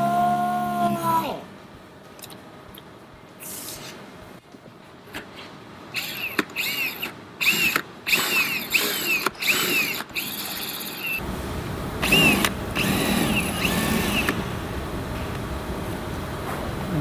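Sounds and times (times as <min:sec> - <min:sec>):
handheld power tool bursts: 0:06.0 - 0:11.2, 0:12.0 - 0:14.4
steady low rumble: 0:11.2 - 0:13.0.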